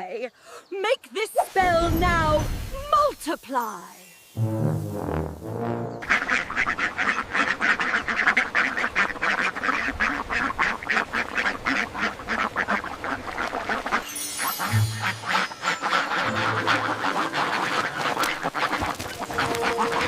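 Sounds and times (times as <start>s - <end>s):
ducks quacking: 5.8s - 20.0s.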